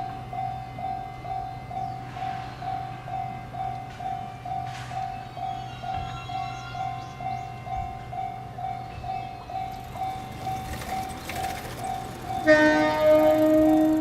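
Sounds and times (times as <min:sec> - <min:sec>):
electric train hum: 0:00.0 - 0:14.0
level-crossing warning bell: 0:00.0 - 0:14.0
train horn blast: 0:12.4 - 0:14.0.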